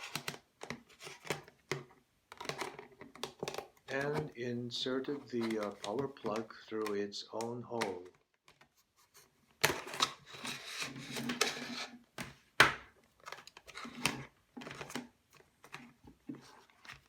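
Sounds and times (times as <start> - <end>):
plastic rustling and scraping: 0.0 - 4.4, 5.0 - 6.9, 7.8 - 17.0
plastic clicks: 5.1 - 8.7.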